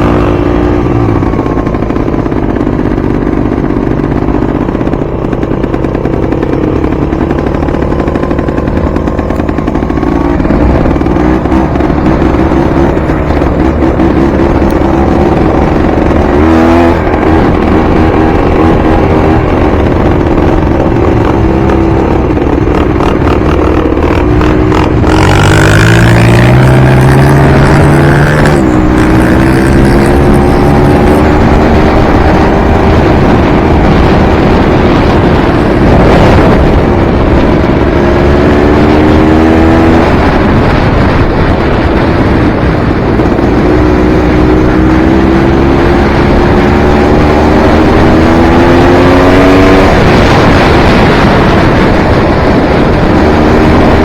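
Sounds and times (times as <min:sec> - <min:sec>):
dirt bike engine revving: 0:00.0 - 0:42.2
steady rushing noise: 0:00.0 - 0:54.0.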